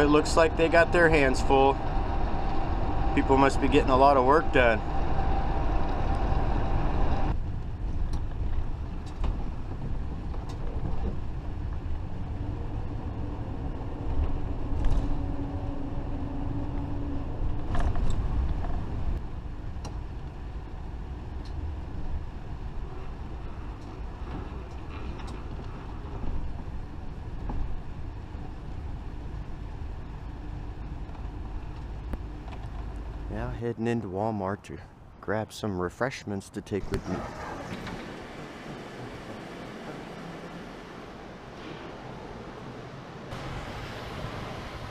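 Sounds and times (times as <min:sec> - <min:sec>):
steady hum: 0:00.0 - 0:10.4
motorhome engine and road rumble: 0:00.0 - 0:44.9.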